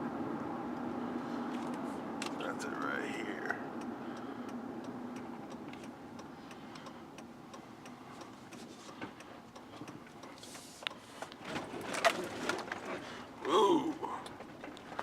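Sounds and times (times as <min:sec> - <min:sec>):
road and engine noise: 0:00.0 - 0:15.0
light ticking clicks: 0:03.7 - 0:11.4.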